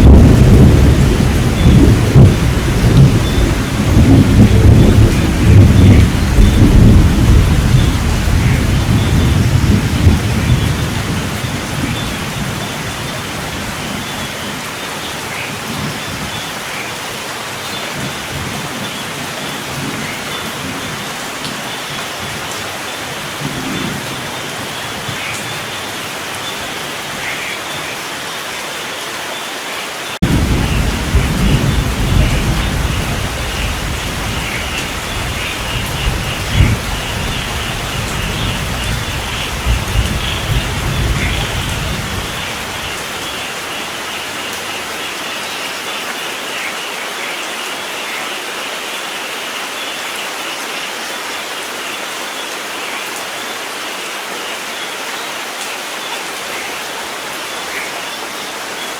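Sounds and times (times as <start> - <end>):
rolling thunder: 0.0 - 13.0, 30.2 - 43.0
heavy rain: 0.0 - 58.9.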